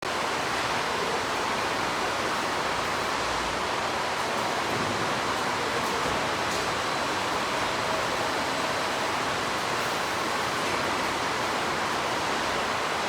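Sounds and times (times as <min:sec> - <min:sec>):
factory machinery rushing: 0:00.3 - 0:13.0.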